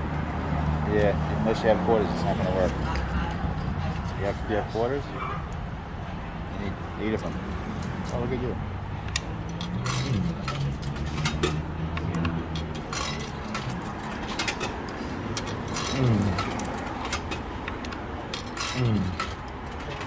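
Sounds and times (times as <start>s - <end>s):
coins clinking in slot: 9.2s - 20.0s.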